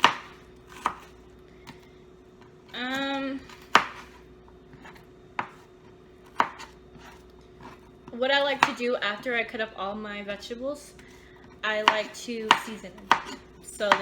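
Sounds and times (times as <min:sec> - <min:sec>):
knife chopping on cutting board: 0:00.0 - 0:01.1, 0:03.5 - 0:04.2, 0:04.8 - 0:07.9, 0:08.5 - 0:08.8, 0:11.8 - 0:14.0.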